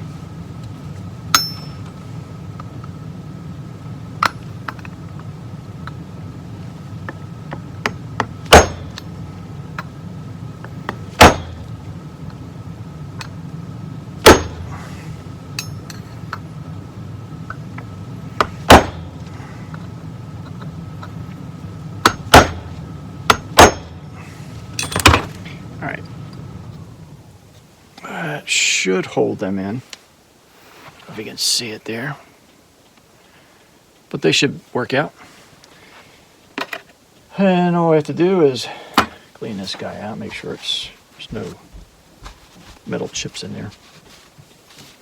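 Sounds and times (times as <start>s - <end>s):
steady low hum: 0.0s - 45.0s
hammer striking a metal punch: 1.3s - 1.8s, 7.8s - 9.0s, 11.2s - 11.6s, 14.2s - 14.7s, 15.6s - 15.9s, 18.4s - 19.0s, 22.0s - 22.7s, 23.3s - 24.0s.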